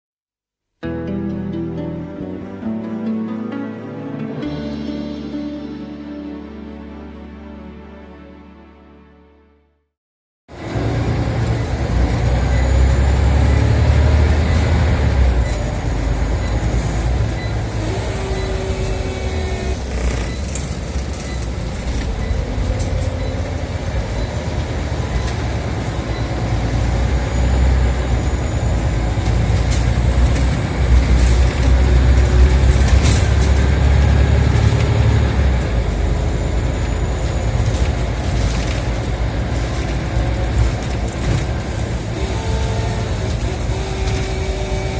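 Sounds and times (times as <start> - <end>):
bus diesel engine drone: 0.8 - 8.2, 10.5 - 44.9
road noise: 10.5 - 44.9.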